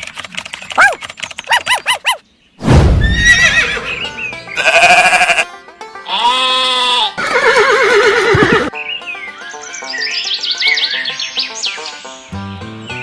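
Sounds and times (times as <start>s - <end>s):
background music: 3.2s - 13.0s
sheep bleating: 4.6s - 8.4s.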